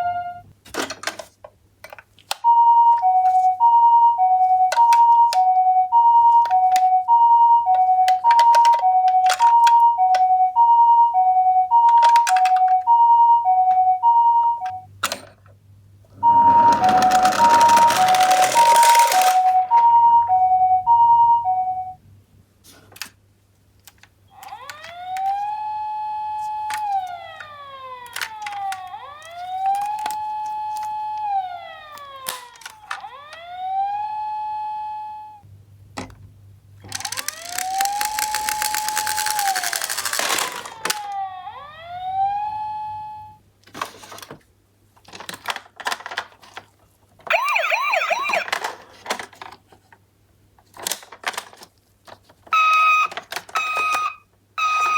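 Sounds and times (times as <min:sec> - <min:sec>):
toy ambulance siren wailing: 0:00.0 - 0:00.5, 0:02.4 - 0:14.9, 0:16.2 - 0:22.0, 0:24.3 - 0:35.4, 0:36.9 - 0:43.4, 0:47.3 - 0:48.7, 0:52.5 - 0:54.9
plastic clicks and clatter: 0:00.6 - 0:02.5, 0:07.7 - 0:10.3, 0:11.8 - 0:12.8, 0:26.4 - 0:31.3, 0:31.9 - 0:33.4, 0:36.8 - 0:41.2, 0:43.6 - 0:50.0, 0:50.6 - 0:54.9
fast warbling siren yelp: 0:24.3 - 0:35.4, 0:38.6 - 0:43.4, 0:47.3 - 0:48.6.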